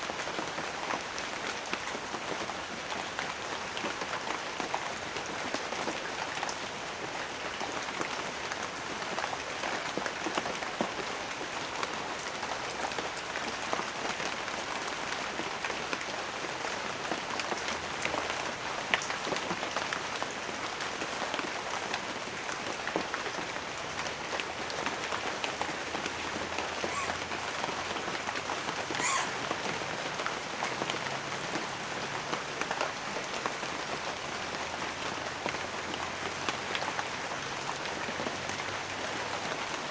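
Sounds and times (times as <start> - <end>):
rain drops tapping: 0.0 - 39.9.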